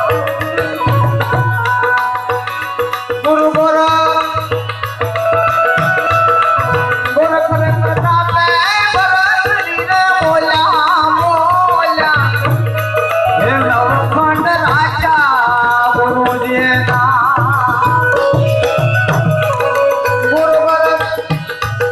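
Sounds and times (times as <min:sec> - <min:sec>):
held accompanying tones: 0:00.0 - 0:09.2, 0:12.3 - 0:21.9
tabla beat: 0:00.0 - 0:21.9.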